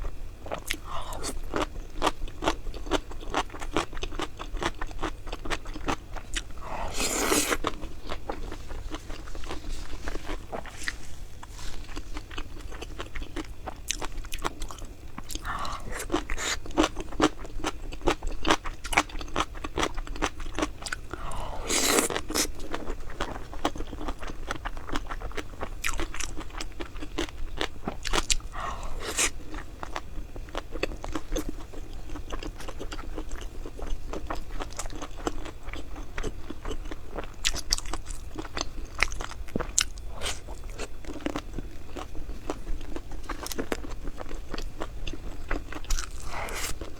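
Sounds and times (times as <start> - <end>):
person crunching and chewing: 0.4 - 46.9.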